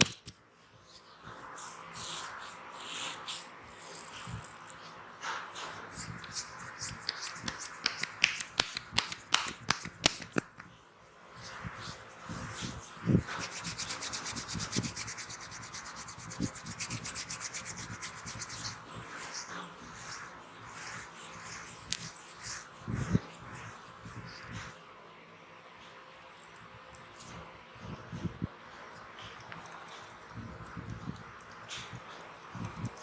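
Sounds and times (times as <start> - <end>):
hands rubbing hair: 5.6 - 10.7, 12.4 - 22.7.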